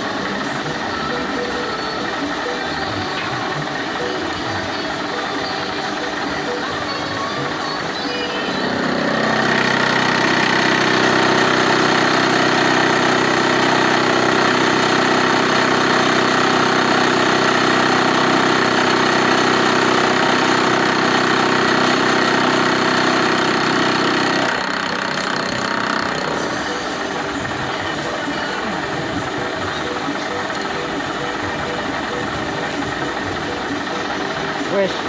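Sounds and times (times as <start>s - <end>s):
milling machine running: 0.0s - 35.0s.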